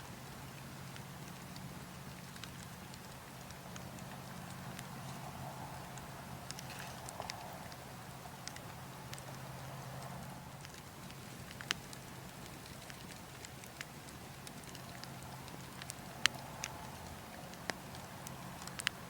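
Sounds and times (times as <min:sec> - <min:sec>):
fire crackling and popping: 0:00.0 - 0:19.0.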